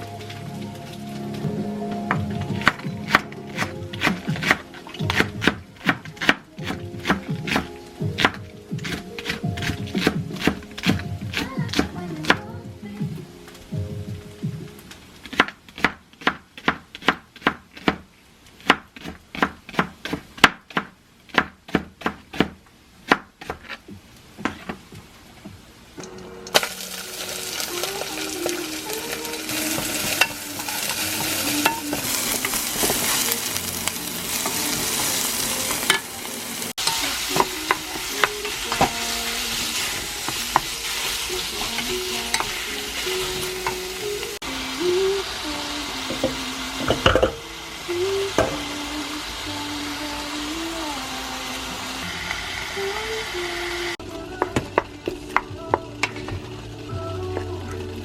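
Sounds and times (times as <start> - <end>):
food sizzling in a pan: 26.0 - 58.0.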